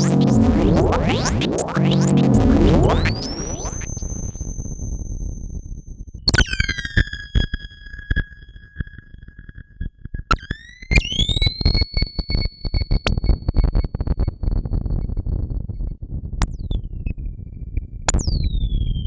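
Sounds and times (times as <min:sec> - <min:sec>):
synthesizer crackling clicks: 0:00.0 - 0:04.6.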